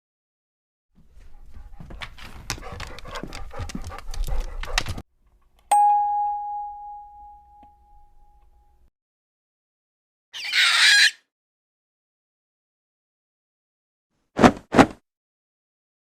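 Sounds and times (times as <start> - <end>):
rapid clicks and noise: 2.5 - 5.0
bell ding: 5.7 - 8.7.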